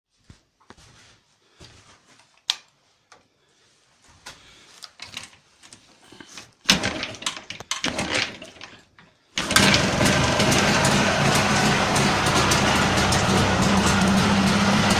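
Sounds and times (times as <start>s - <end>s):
motorcycle engine starting and running: 6.7s - 14.9s.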